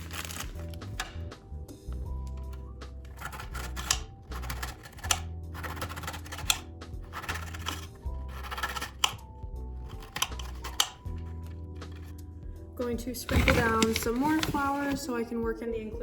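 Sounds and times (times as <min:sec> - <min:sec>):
knife cutting crisp cookies: 0:00.0 - 0:12.2
background music: 0:00.0 - 0:16.0.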